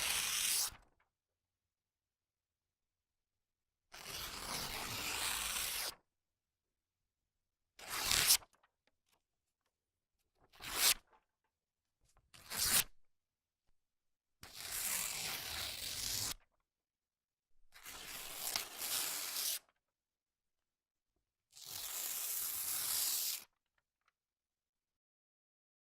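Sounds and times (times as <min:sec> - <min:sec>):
paper ripping by hand: 0:07.8 - 0:08.5, 0:10.5 - 0:11.1, 0:12.4 - 0:12.9, 0:14.4 - 0:16.4, 0:17.8 - 0:19.6, 0:21.6 - 0:23.5.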